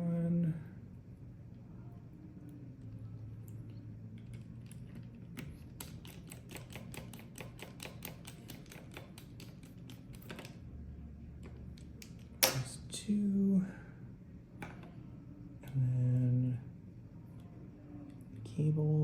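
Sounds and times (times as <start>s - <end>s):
screwdriver clicking: 5.4s - 10.6s.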